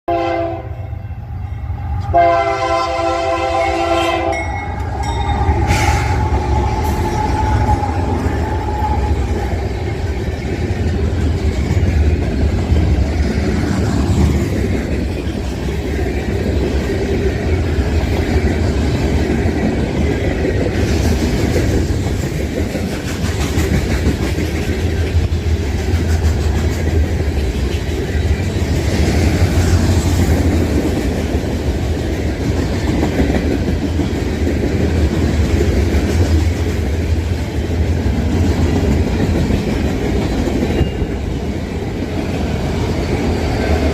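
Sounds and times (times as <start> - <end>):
train rumbling past: 0.1 - 43.9.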